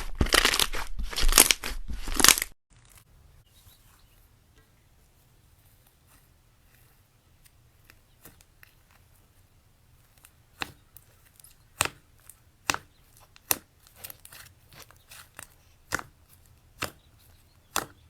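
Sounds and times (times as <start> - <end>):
slime crackling: 5.3 - 18.0.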